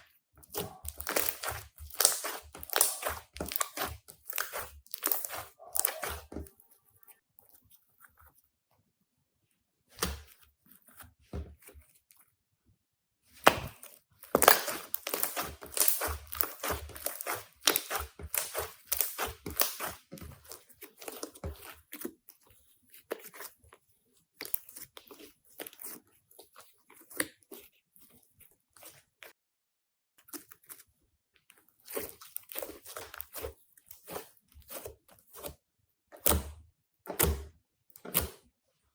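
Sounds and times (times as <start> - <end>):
crunchy slime crackling and popping: 0.5 - 6.3, 13.4 - 22.0.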